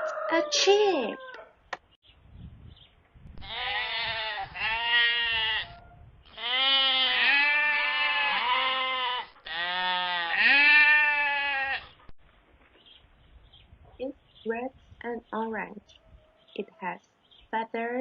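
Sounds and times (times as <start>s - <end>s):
sheep bleating: 3.4s - 12.0s.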